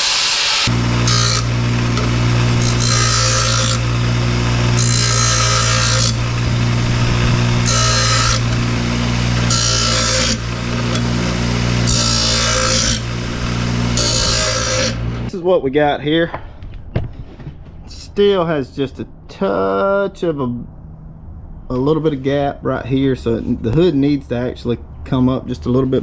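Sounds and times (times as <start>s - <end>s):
electric grinder grinding steel: 0.0s - 15.3s.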